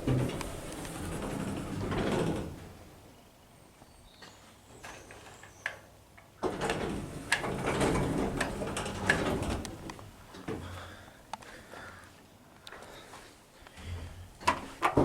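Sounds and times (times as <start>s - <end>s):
lift doors sliding and rattling: 0.0s - 3.3s, 6.4s - 10.9s.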